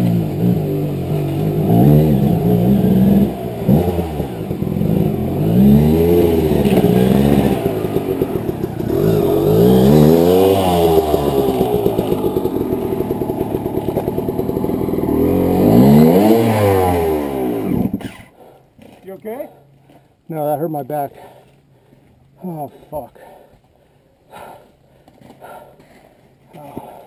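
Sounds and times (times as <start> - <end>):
clatter: 0.0 - 16.7
dirt bike engine revving: 0.0 - 18.3.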